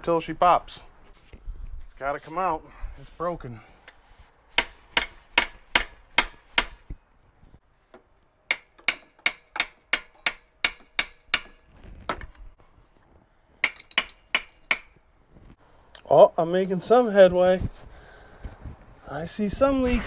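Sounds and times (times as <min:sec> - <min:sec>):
hammer striking metal: 0:04.6 - 0:06.8, 0:08.5 - 0:11.6, 0:13.6 - 0:14.9.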